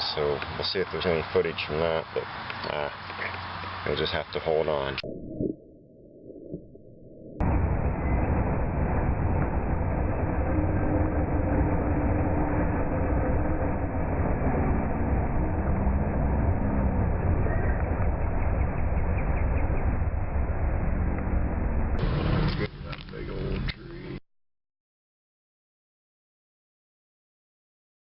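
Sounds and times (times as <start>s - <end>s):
vehicle rumbling in motion: 0.0s - 5.2s, 7.4s - 24.2s.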